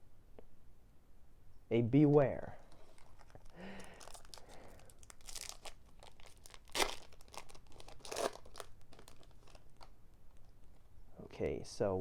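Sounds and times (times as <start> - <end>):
foil pack crinkling: 2.6 - 10.9
foil ripping: 2.7 - 10.4.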